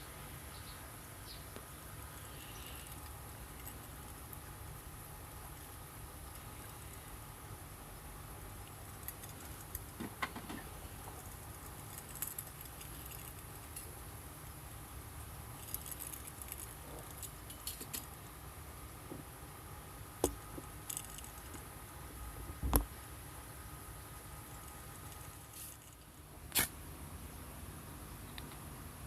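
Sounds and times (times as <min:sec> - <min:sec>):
small hard objects clinking: 0:11.1 - 0:13.9, 0:15.5 - 0:18.2.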